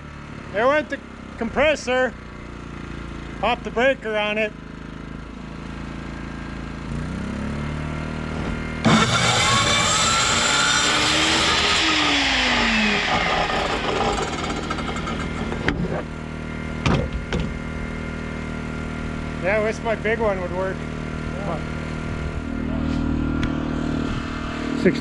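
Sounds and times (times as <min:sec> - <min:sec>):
generator engine labouring: 0:08.4 - 0:16.2
air compressor running: 0:08.8 - 0:15.9.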